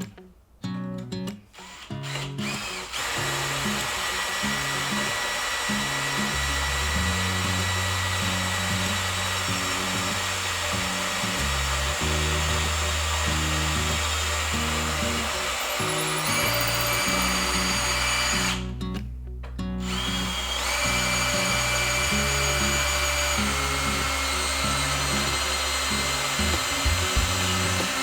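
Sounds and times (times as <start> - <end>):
power tool motor whirring: 1.6 - 18.7, 19.8 - 28.0
background music: 10.0 - 28.0.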